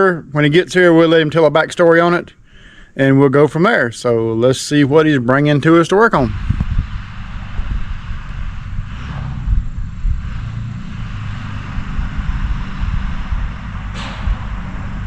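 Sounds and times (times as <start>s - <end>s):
vehicle engine rumble: 5.0s - 15.0s
wind on microphone: 6.0s - 15.0s.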